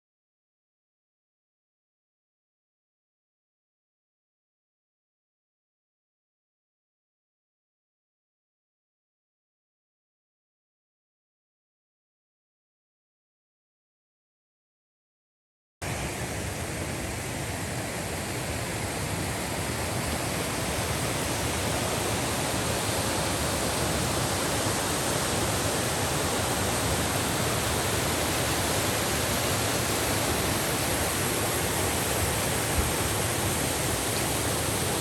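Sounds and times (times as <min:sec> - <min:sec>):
rushing water: 0:15.8 - 0:35.0.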